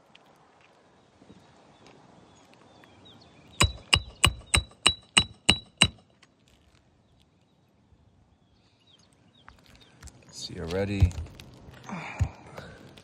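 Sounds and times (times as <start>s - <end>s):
hammer striking nail: 3.6s - 6.0s.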